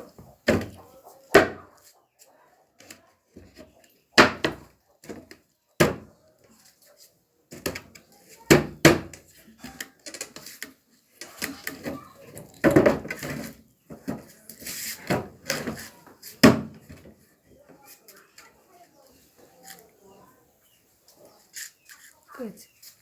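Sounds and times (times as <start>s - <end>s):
wooden knocks and clatter: 11.2s - 14.4s.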